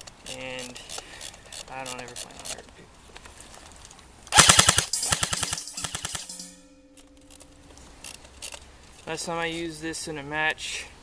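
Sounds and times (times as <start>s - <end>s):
airsoft rifle firing full-auto: 4.3s - 6.2s.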